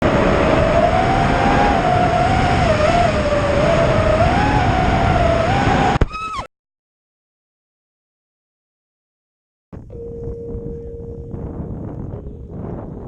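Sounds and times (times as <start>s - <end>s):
rushing air and propeller noise: 0.0s - 6.0s
quadcopter motors whining: 0.1s - 6.5s.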